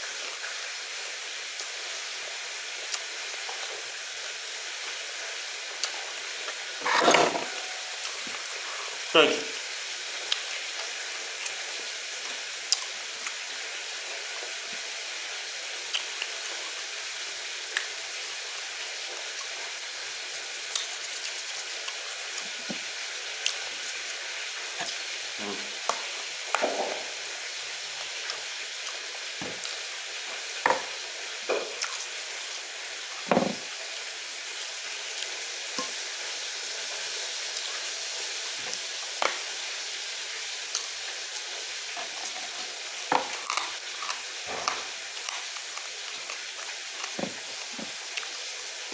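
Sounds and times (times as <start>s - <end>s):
crunching and chewing: 31.6s - 32.7s, 42.0s - 48.8s.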